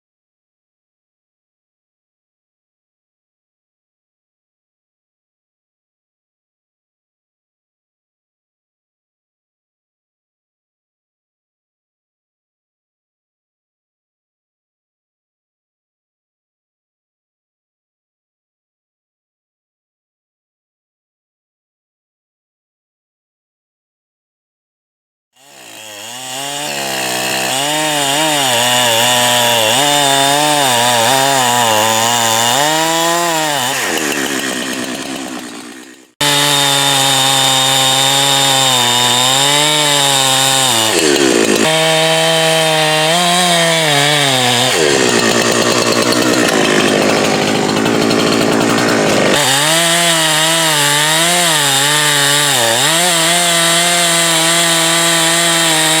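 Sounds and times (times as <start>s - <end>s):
chainsaw cutting wood: 25.4s - 56.0s.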